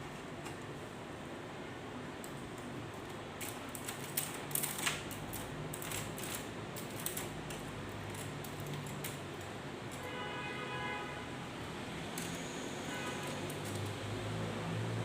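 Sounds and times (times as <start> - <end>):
typewriter mechanism clicking: 3.4 - 9.5.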